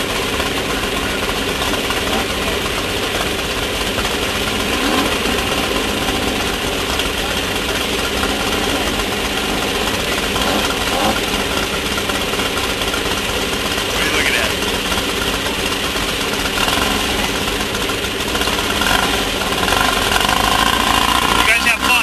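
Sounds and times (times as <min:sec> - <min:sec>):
race car engine running: 0:00.0 - 0:22.0.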